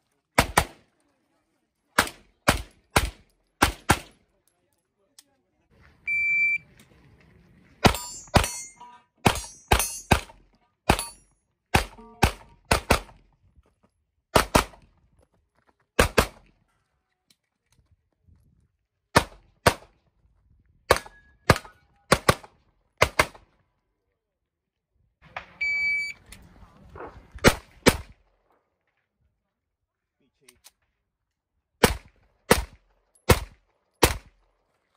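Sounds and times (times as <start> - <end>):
pistol shots: 0.4 - 0.8, 2.0 - 4.2, 7.8 - 13.2, 14.3 - 14.8, 16.0 - 16.4, 19.1 - 19.9, 20.9 - 23.4, 27.4 - 28.3, 31.8 - 34.4
short electronic beep: 6.0 - 6.7, 25.6 - 26.2.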